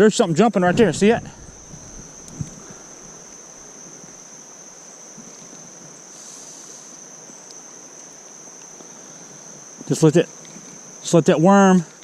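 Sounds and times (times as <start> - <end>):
insects trilling: 0.0 - 12.0
creek water running: 0.5 - 12.0.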